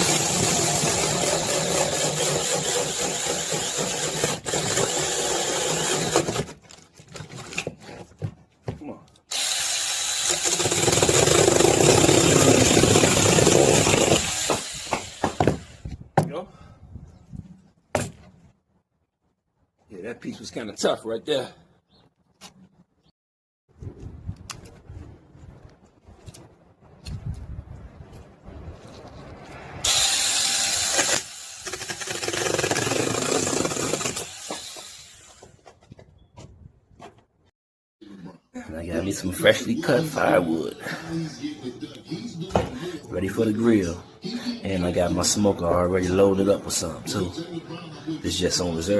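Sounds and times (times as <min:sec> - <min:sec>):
chainsaw cutting wood: 0:00.0 - 0:06.6, 0:09.3 - 0:15.9, 0:29.8 - 0:35.6.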